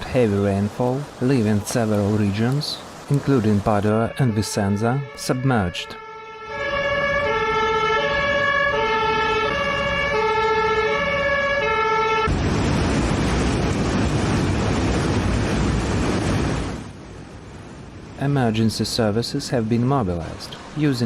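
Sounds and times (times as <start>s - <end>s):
two-tone emergency siren: 3.8s - 12.3s
loud steady rushing noise: 12.2s - 21.0s.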